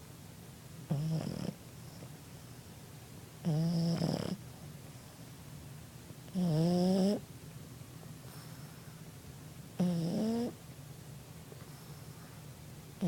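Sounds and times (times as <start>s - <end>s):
dog snoring: 0.9s - 2.1s, 3.4s - 4.4s, 6.3s - 7.2s, 9.8s - 10.6s.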